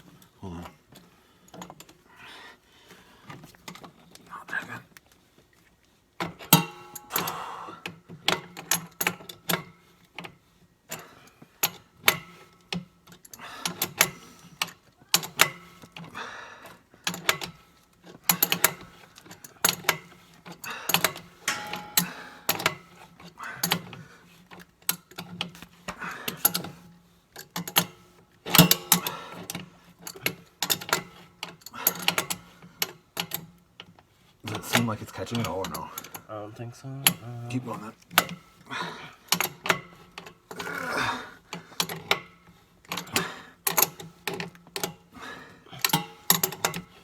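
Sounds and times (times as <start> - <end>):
hand tools clicking and clattering: 6.2 - 7.4, 17.0 - 47.0.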